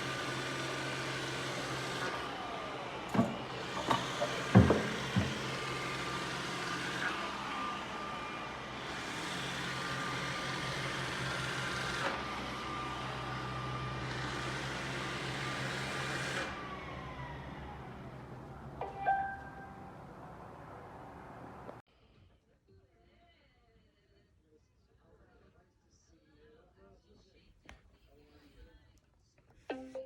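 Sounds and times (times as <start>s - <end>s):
robot vacuum whirring: 0.2s - 18.3s
sharp knocks: 3.2s - 5.5s.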